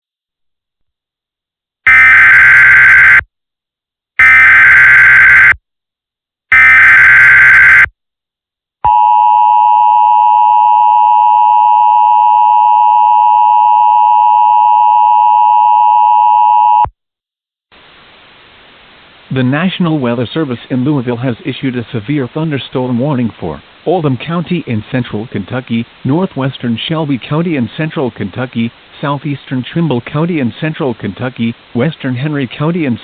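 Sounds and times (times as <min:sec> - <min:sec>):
shrill data tones: 0:01.9 - 0:03.2, 0:04.2 - 0:05.6, 0:06.5 - 0:07.9.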